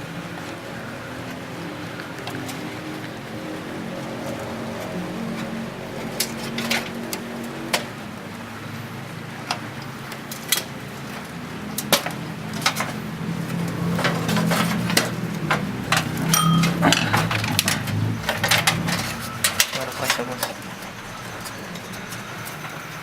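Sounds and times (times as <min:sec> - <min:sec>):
computer parts clicking and knocking: 0:13.7 - 0:22.8.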